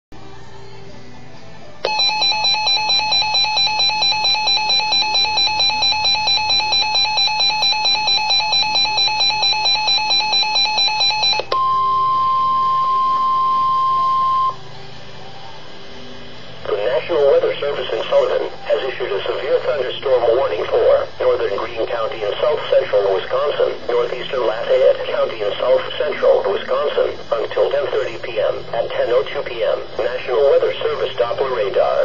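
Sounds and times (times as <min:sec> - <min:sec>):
pulsing electronic alarm beep: 0:01.9 - 0:14.6.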